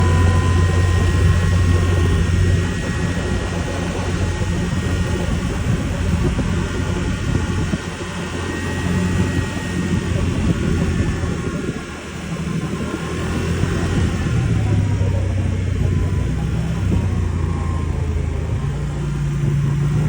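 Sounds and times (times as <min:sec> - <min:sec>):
car accelerating with whirring whine: 0:00.0 - 0:20.0
low engine and road drone: 0:00.0 - 0:20.0.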